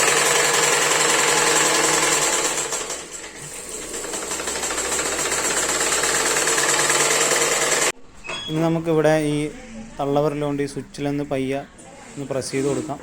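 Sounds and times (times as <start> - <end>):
sewing machine running: 0.0 - 8.0.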